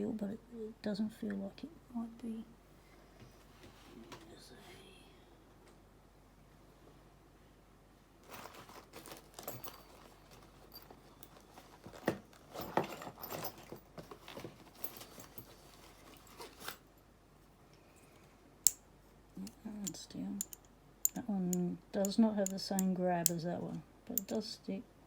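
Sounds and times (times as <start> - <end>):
metal padlock parts clicking and rattling: 8.3 - 16.8, 19.4 - 24.4.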